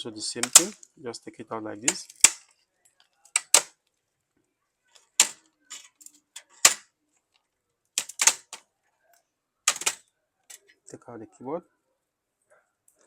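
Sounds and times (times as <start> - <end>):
plastic clicks and snaps: 0.4 - 0.9.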